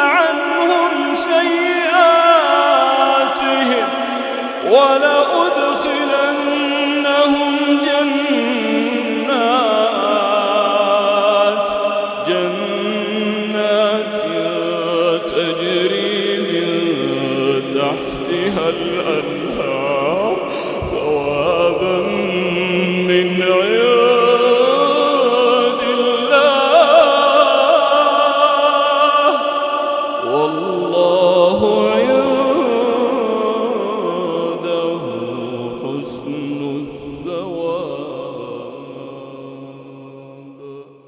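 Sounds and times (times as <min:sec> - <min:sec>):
man chanting a recitation: 0:00.0 - 0:40.9.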